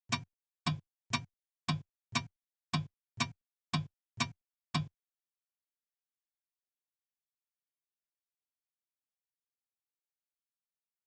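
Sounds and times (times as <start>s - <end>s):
alarm clock ticking: 0.0s - 4.9s.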